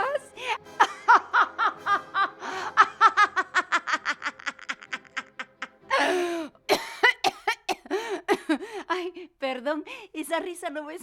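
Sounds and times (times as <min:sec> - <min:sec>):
woman cackling like a witch: 0:00.8 - 0:06.2.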